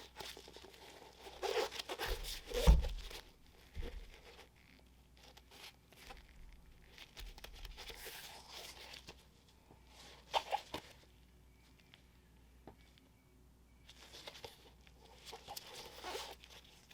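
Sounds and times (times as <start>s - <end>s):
paper crackling and rustling: 0.0s - 9.3s, 13.9s - 16.9s.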